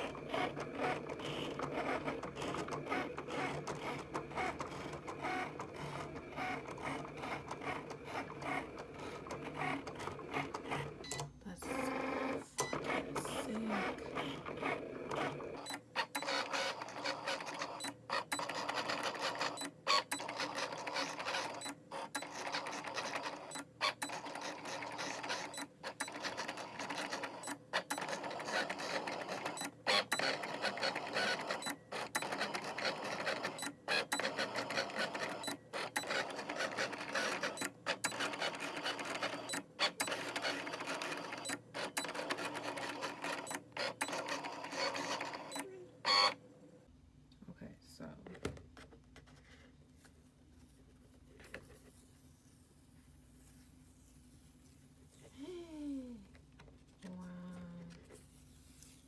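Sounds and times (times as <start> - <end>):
cutting machine mechanical whirring: 0.0 - 46.4.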